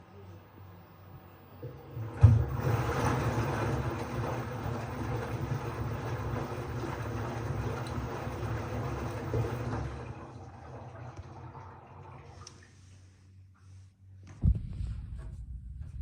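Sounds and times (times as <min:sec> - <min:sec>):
washing machine drum rumbling: 0:01.6 - 0:12.2.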